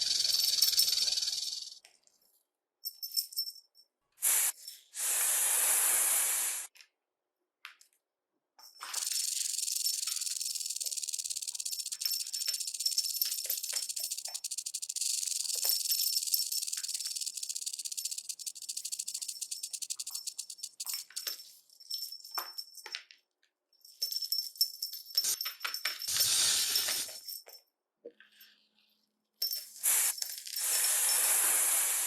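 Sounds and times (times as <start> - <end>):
snake rattling hiss: 0.0 - 1.8, 4.2 - 6.7, 8.9 - 21.2, 26.1 - 27.2, 29.8 - 32.0.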